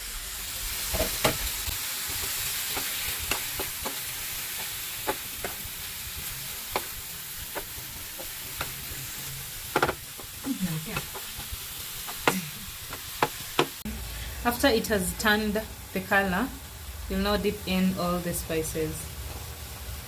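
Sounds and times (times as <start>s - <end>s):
food sizzling in a pan: 0.0s - 20.0s
utensil clicking against pan: 9.7s - 13.8s.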